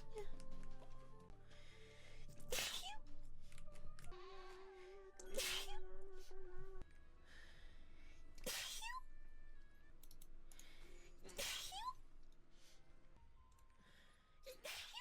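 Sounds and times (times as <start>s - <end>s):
sneezes with squeak: 2.5s - 3.0s, 5.3s - 5.8s, 8.4s - 9.0s, 11.4s - 12.0s, 14.5s - 15.0s.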